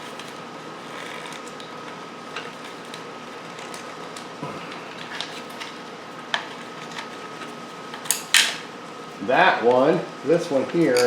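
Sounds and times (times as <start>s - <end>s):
steady background hiss: 7.5s - 11.0s.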